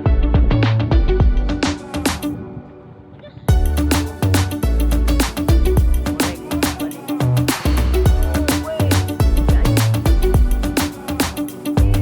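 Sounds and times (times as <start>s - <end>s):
bass: 0.0s - 2.2s, 3.5s - 12.0s
drums: 0.0s - 2.4s, 3.5s - 12.0s
plucked melody: 3.5s - 12.0s.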